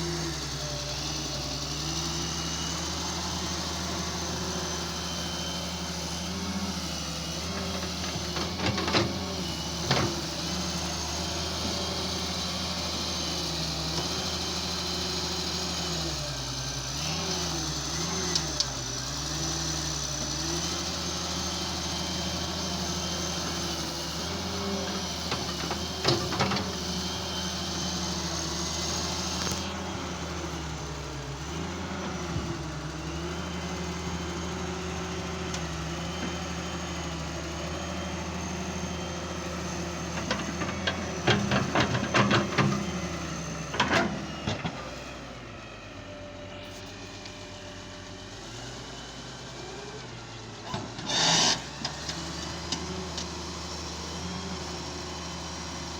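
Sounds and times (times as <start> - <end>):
excavator diesel engine running: 0.0 - 55.9.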